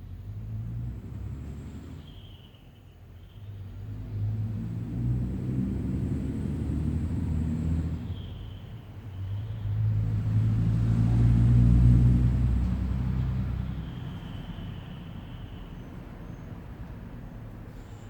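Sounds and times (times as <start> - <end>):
passing vehicle engine rumble: 0.0 - 2.4, 3.4 - 18.0.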